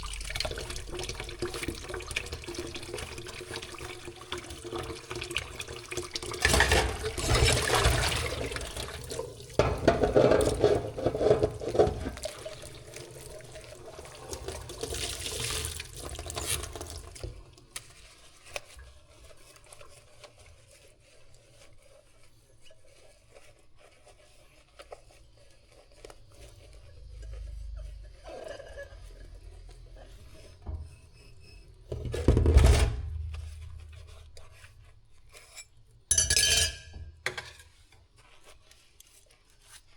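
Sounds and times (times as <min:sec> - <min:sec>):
tap water running into sink: 0:00.0 - 0:18.0
dishes clinking: 0:06.4 - 0:12.8, 0:36.1 - 0:37.8.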